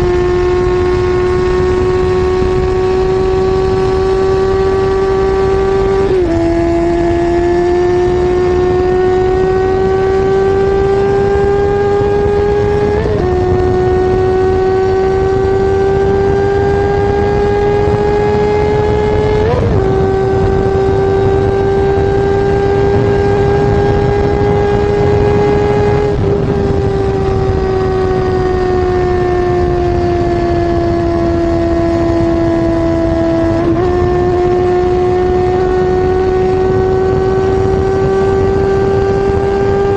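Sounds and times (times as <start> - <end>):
motorcycle engine at high rpm: 0.0 - 39.9.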